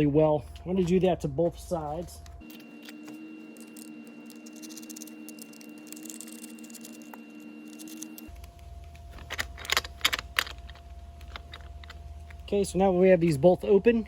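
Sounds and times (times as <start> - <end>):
steady hum: 0.0 - 14.0
wrench clicking and rattling: 3.7 - 7.1, 9.1 - 12.4
sharp metal clicks: 3.7 - 12.5.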